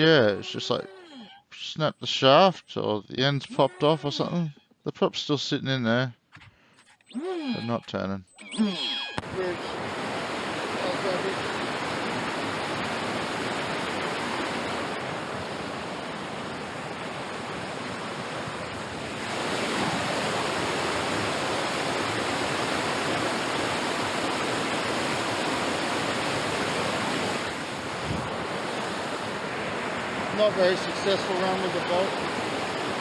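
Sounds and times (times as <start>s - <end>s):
river rapids rushing: 9.4s - 33.0s.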